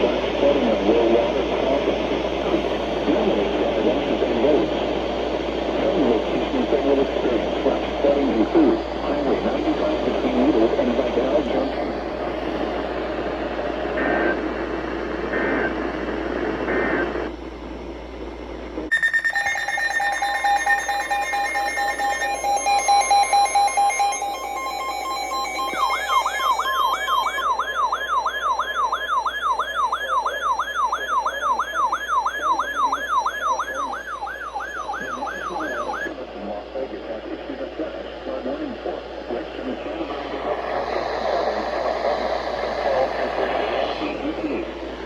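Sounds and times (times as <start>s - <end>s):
noisy background: 0.0s - 45.0s
data bursts: 18.9s - 36.1s
steady alert tone: 18.9s - 36.1s
siren-like warble: 18.9s - 36.2s, 40.2s - 45.0s.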